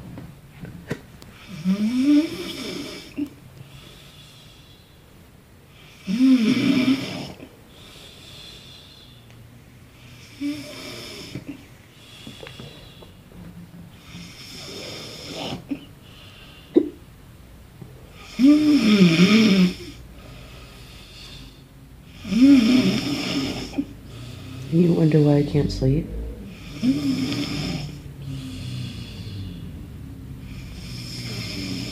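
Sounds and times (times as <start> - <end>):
quiet breathing: 1.2 - 16.8, 19.6 - 25.4, 26.0 - 31.9
man snoring: 1.4 - 3.2, 5.8 - 9.2, 10.0 - 13.0, 14.0 - 15.8, 18.2 - 25.1, 26.0 - 31.9.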